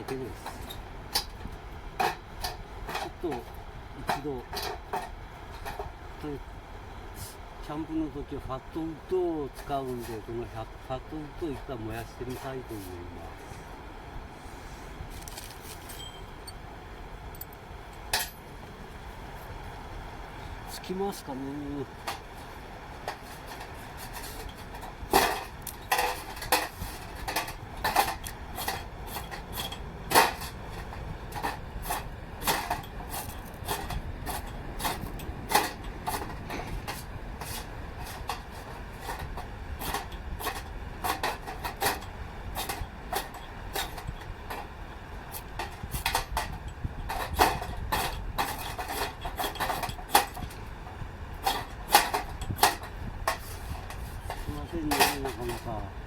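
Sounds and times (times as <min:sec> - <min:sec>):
light metallic clinks: 0:15.3 - 0:16.6, 0:17.3 - 0:18.4.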